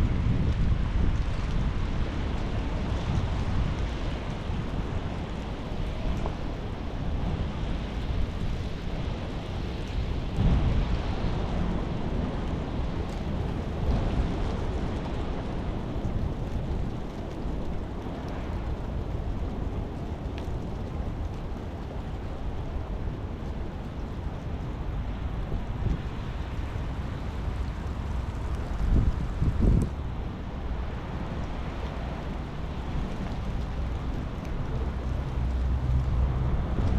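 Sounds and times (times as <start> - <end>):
steady rain: 0.0 - 36.9
deep low rumble: 24.6 - 36.9.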